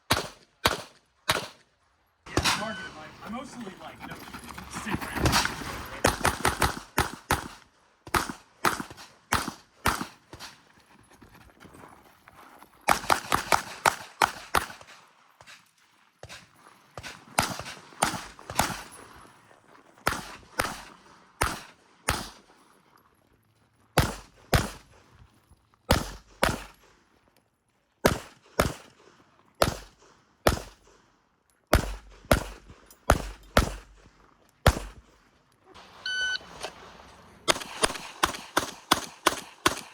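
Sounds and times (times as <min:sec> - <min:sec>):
pistol shots: 0:00.0 - 0:01.6, 0:02.3 - 0:03.8, 0:05.2 - 0:10.5, 0:12.9 - 0:15.0, 0:20.0 - 0:22.4, 0:24.0 - 0:24.8, 0:25.9 - 0:26.9, 0:28.0 - 0:29.0, 0:29.6 - 0:31.0, 0:31.7 - 0:35.0, 0:36.4 - 0:39.9.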